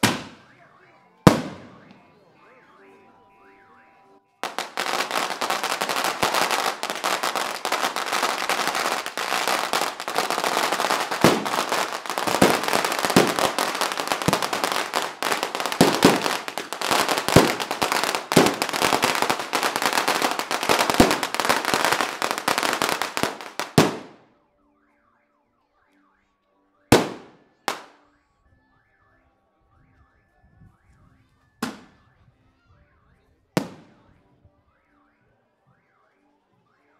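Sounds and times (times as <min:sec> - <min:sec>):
firecracker bangs: 0:00.0 - 0:00.5, 0:01.3 - 0:02.0, 0:04.4 - 0:24.2
firecrackers crackling: 0:00.0 - 0:02.9, 0:04.4 - 0:24.3, 0:26.9 - 0:28.0.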